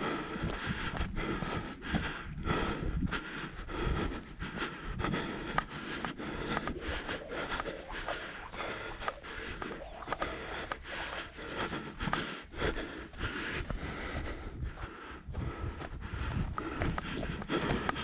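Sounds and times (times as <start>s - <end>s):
footsteps: 0.0s - 18.0s
person breathing: 0.0s - 18.0s.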